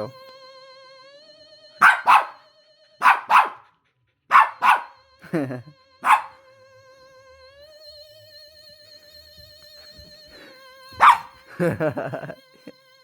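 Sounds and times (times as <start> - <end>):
dog barking: 1.8 - 2.4, 3.0 - 3.6, 4.3 - 5.0, 6.0 - 6.4, 11.0 - 11.3.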